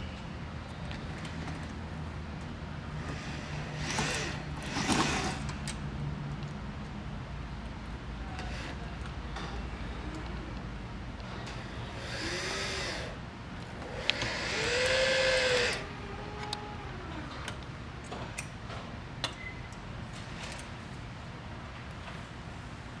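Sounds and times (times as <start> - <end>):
power drill motor: 3.0 - 5.7, 11.5 - 13.2, 13.8 - 17.6.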